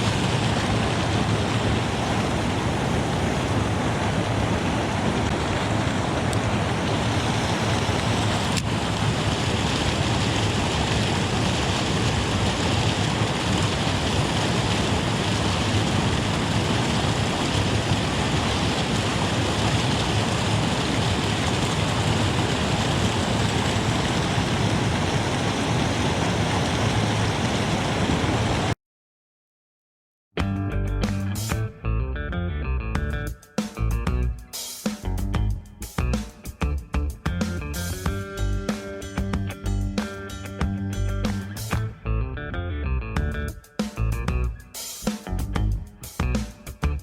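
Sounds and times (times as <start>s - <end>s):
water rushing over waterfall: 0.0s - 28.8s
guitar music: 30.4s - 47.0s.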